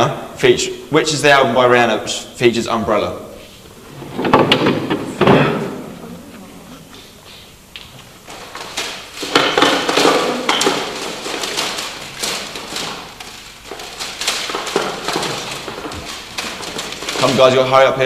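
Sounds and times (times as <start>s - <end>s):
plastic cd cases clattering: 8.2s - 17.9s.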